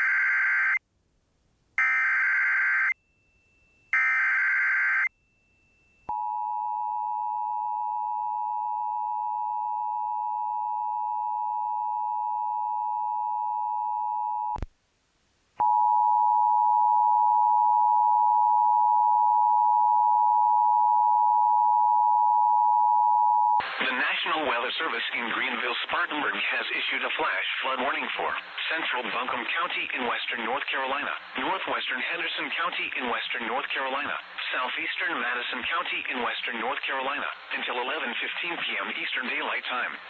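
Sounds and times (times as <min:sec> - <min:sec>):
long steady alert tone: 0:01.8 - 0:08.5
faint radio hiss: 0:14.6 - 0:15.6, 0:23.6 - 0:40.0.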